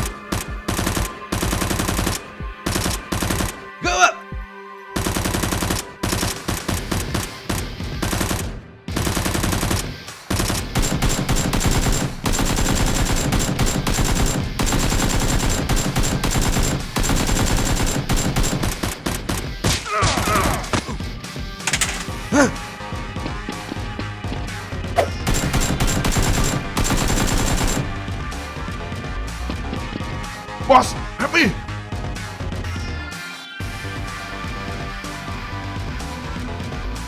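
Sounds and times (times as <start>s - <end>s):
rapid automatic gunfire: 0.0s - 3.6s, 5.0s - 19.8s, 21.7s - 22.2s, 25.1s - 28.1s
person shouting: 3.8s - 4.2s, 19.9s - 20.7s, 22.2s - 22.6s, 30.7s - 31.6s.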